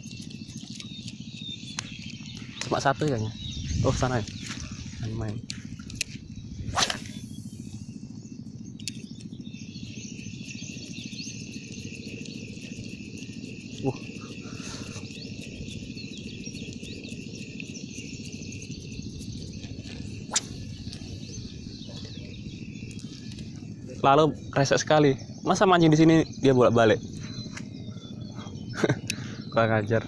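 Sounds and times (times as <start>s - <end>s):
shrill insect chorus: 0.0s - 30.0s
low rumble: 2.4s - 8.7s.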